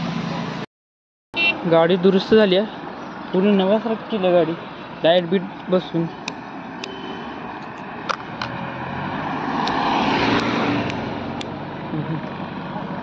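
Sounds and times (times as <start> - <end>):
vehicle passing by: 7.8 - 13.0.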